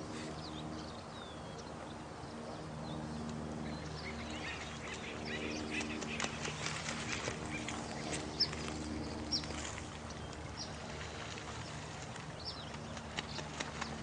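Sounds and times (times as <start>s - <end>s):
running water: 3.9s - 14.0s.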